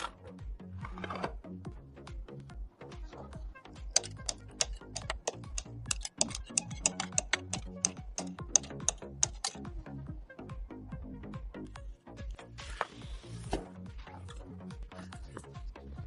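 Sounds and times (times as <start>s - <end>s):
background music: 0.0s - 16.0s
rapid sharp clicks: 3.9s - 9.6s.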